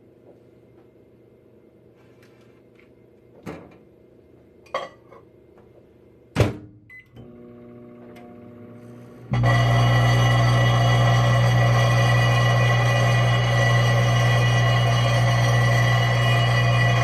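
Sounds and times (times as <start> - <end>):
microwave oven humming: 6.9 - 17.0
loud steady drone: 9.4 - 17.0.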